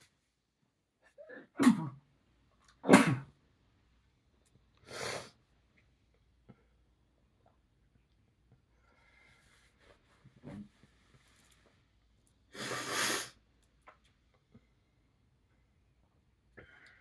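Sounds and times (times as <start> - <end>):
man sneezing: 2.8 - 3.3.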